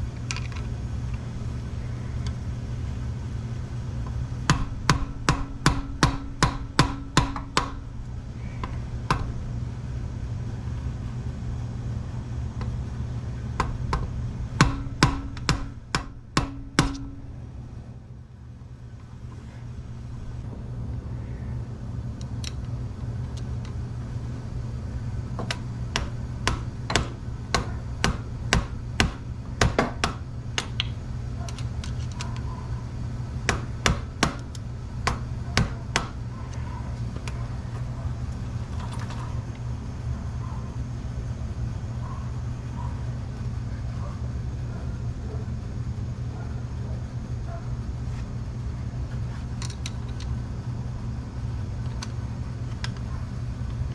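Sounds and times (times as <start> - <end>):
low steady hum: 0.0 - 53.9
hammer tapping on metal: 4.5 - 7.9, 8.6 - 9.4, 13.6 - 17.3, 25.4 - 31.0, 33.5 - 36.6.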